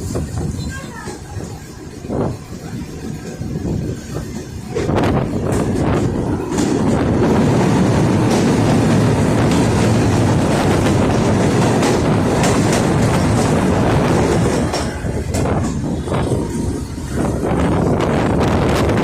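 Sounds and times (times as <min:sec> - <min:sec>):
diesel locomotive engine: 0:00.0 - 0:19.0
wheels clicking over rails: 0:00.0 - 0:19.0.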